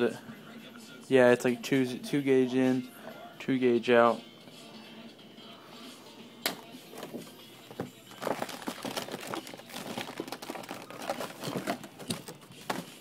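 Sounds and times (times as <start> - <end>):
plastic packaging crinkling: 8.1 - 13.0.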